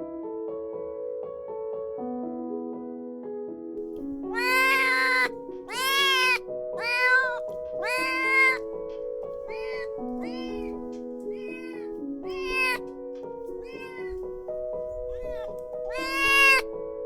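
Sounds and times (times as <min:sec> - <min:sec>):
kitten meowing: 0:04.3 - 0:08.7, 0:09.4 - 0:12.9, 0:13.5 - 0:16.7.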